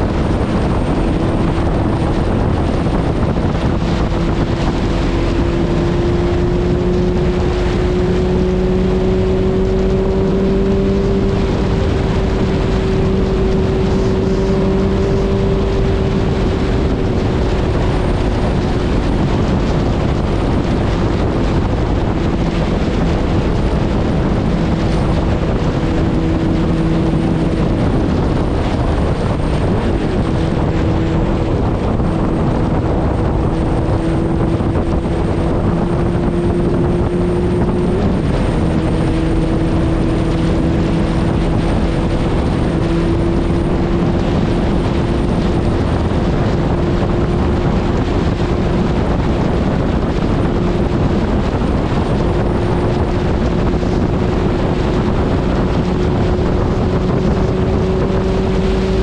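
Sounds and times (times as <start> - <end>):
motorcycle engine cruising: 0.0 - 59.0
wind rushing over microphone: 0.0 - 59.0.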